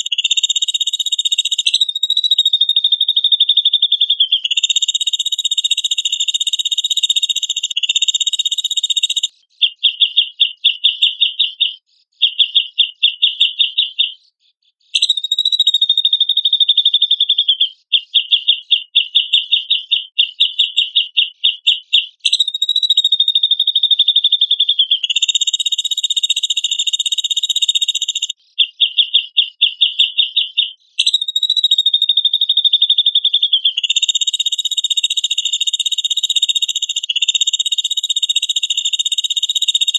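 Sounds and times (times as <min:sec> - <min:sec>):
bulbul buzzy call: 0:00.0 - 0:03.5, 0:21.7 - 0:28.4, 0:31.0 - 0:39.9.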